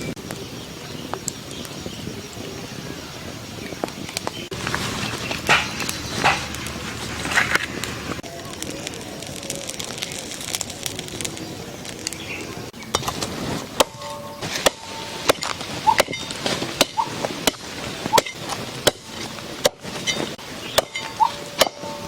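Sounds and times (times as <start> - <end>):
blade chopping: 4.5 - 8.0, 12.9 - 22.0.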